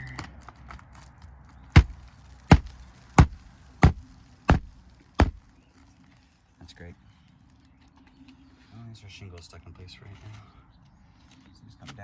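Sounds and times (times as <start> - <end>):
hammer striking roof shingle: 1.7 - 5.5.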